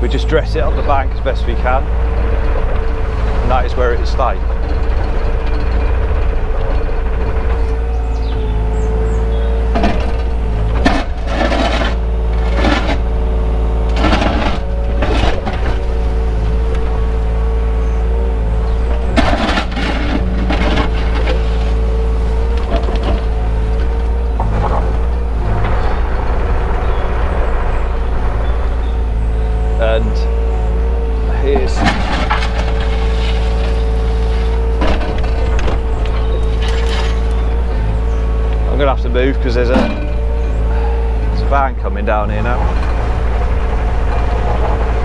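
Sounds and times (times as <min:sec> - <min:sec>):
excavator engine droning: 0:00.0 - 0:45.0
bucket scraping and clunking: 0:09.1 - 0:17.3, 0:18.7 - 0:27.0, 0:31.3 - 0:45.0.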